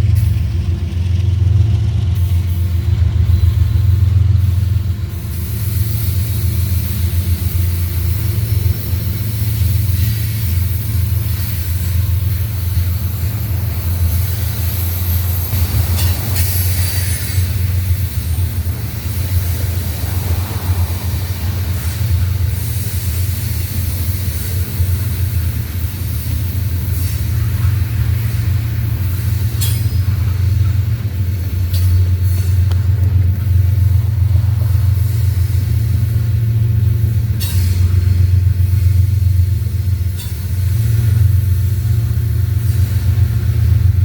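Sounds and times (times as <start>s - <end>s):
train rumbling past: 0.0s - 44.0s
high wheel squeals: 2.3s - 24.2s.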